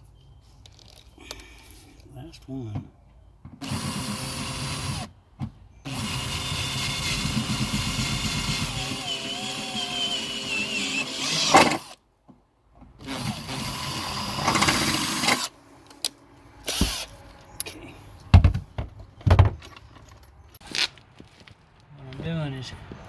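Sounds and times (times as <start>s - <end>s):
electric drill drilling: 3.6s - 5.1s, 5.9s - 12.0s, 13.0s - 15.5s, 16.7s - 17.1s.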